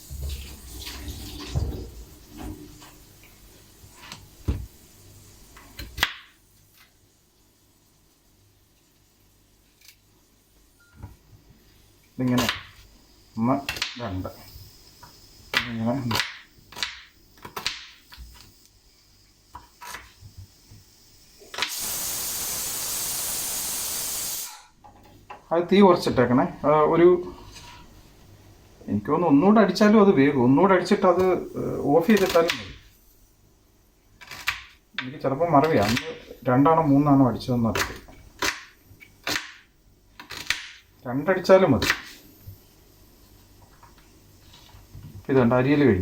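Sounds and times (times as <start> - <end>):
kitchen knocks and clatters: 0.0 - 3.0
pressure cooker whistle hissing: 18.0 - 24.7.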